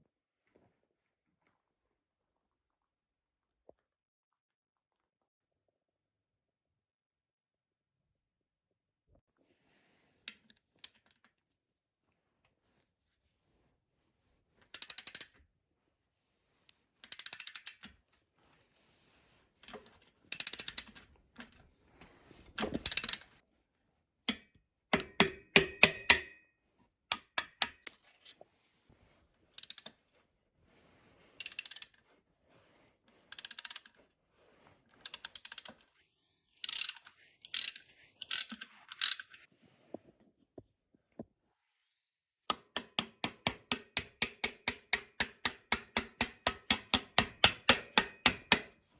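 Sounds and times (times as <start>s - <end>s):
ratchet wrench clicking: 17.1s - 17.8s, 20.3s - 20.9s, 36.6s - 39.4s.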